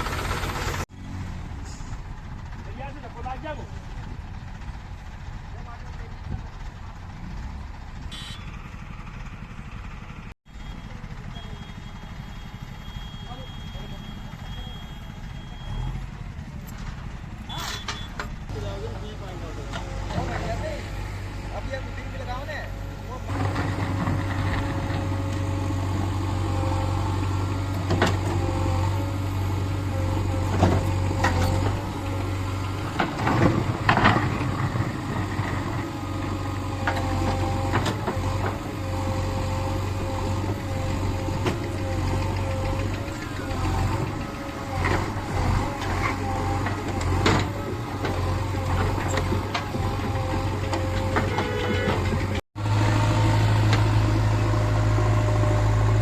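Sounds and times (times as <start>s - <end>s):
diesel engine running: 0.0s - 56.0s
knocks and clanks: 32.8s - 35.8s, 40.1s - 52.4s.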